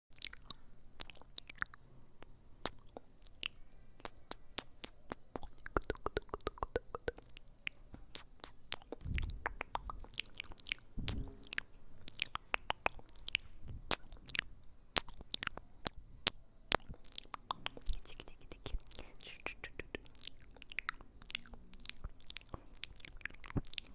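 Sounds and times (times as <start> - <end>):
low muffled thumps: 9.0 - 9.5, 11.0 - 11.4.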